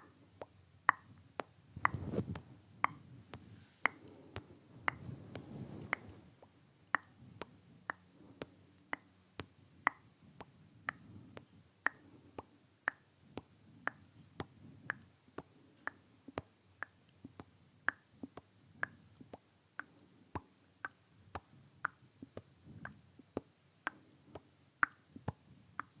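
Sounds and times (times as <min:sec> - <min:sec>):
mouth pops: 0:00.0 - 0:08.0.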